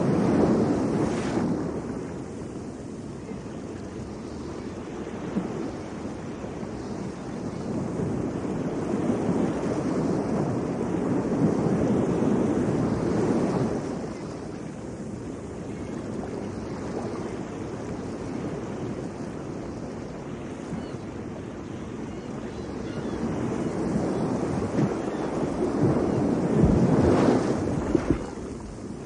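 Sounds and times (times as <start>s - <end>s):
waves rushing: 0.0s - 29.0s
wind: 0.0s - 29.0s.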